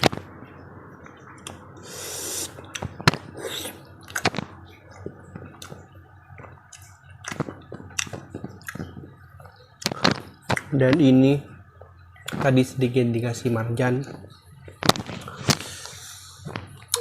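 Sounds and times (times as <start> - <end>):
person chewing: 1.4 - 5.8, 6.4 - 10.7
breathy hiss: 1.8 - 2.6.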